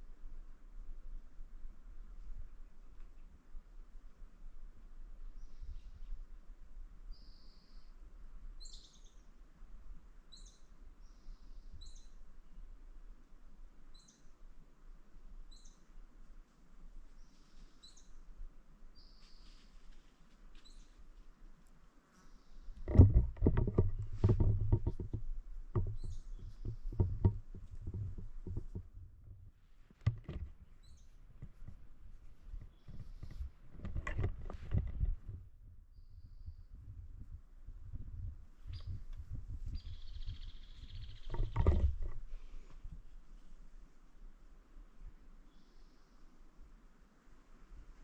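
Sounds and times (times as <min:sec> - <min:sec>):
faint high bird chirp: 0:07.1 - 0:08.0, 0:08.6 - 0:09.3, 0:10.3 - 0:12.7, 0:13.9 - 0:14.4, 0:15.5 - 0:15.9, 0:17.2 - 0:18.2, 0:19.0 - 0:19.8, 0:20.6 - 0:21.0, 0:35.9 - 0:36.9, 0:39.7 - 0:41.6, 0:45.4 - 0:46.4.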